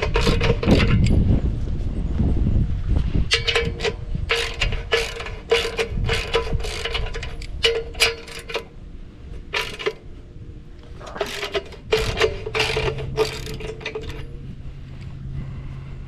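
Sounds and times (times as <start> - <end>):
ratchet wrench clicking: 0.0 - 1.2, 3.3 - 8.7, 9.5 - 10.0, 11.2 - 14.3
low steady hum: 0.0 - 16.0.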